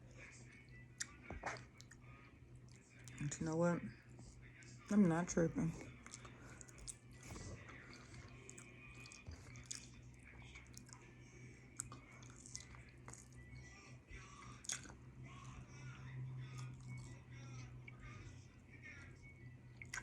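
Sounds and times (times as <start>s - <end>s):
faint low hum: 0.0s - 20.0s
person chewing food: 0.2s - 3.4s, 5.8s - 18.2s, 19.7s - 20.0s.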